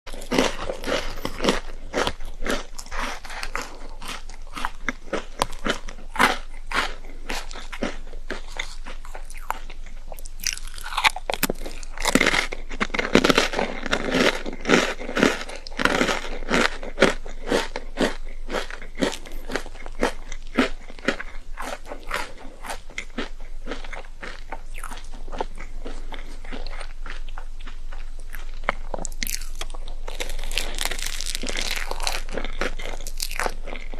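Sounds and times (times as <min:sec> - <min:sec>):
chewing crunchy food: 0:00.1 - 0:33.9.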